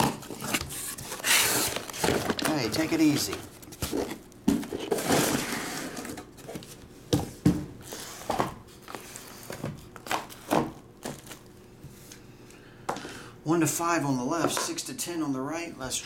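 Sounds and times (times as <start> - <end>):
packaging rustling and crinkling: 0.0 - 6.8, 7.8 - 11.5
boxes knocking on a table: 7.1 - 8.6.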